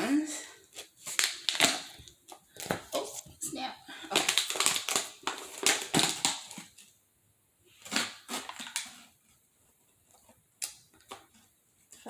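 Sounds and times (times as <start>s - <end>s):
crisp can crinkling rustles: 4.1s - 7.0s, 7.7s - 12.0s.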